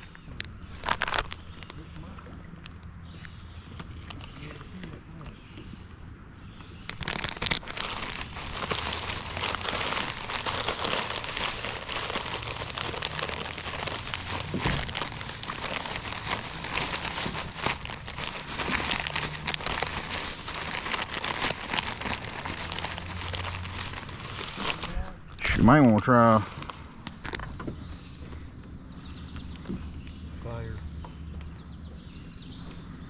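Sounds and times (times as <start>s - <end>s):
plastic packaging crinkling: 0.0s - 1.9s, 6.9s - 25.2s.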